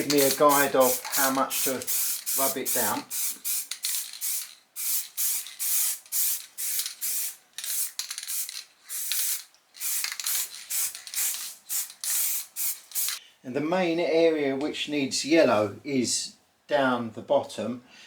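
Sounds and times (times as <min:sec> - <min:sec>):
spray paint hissing: 0:00.0 - 0:13.2.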